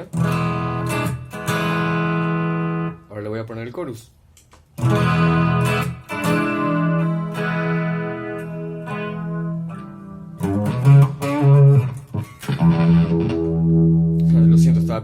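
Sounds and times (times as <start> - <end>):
electric guitar chords with chorus: 0.1 - 3.0, 4.8 - 15.0.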